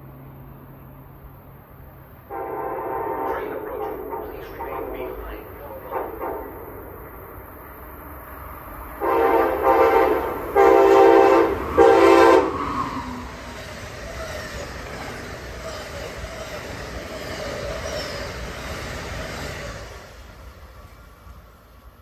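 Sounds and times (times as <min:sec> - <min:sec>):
train rolling past: 0:00.0 - 0:22.0
train air horn blasts: 0:02.3 - 0:07.0, 0:09.0 - 0:13.0.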